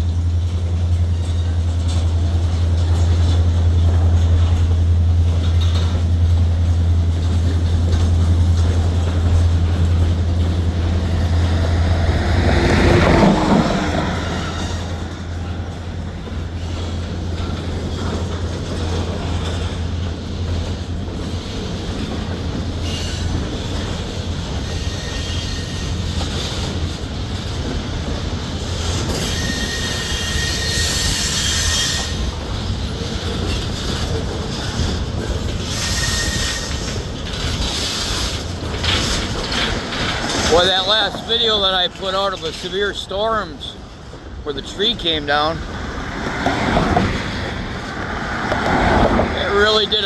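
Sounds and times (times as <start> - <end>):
low diesel drone: 0.0 - 18.2
train wheels rumbling on rail: 0.0 - 50.0
high wheel squeals: 10.6 - 18.2, 24.6 - 26.3, 29.0 - 32.5, 34.6 - 37.2, 38.9 - 43.7.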